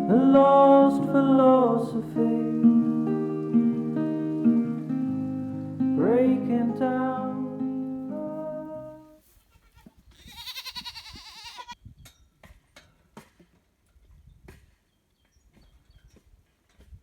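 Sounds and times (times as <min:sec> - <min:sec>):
farm animal bleating: 0:07.6 - 0:11.8.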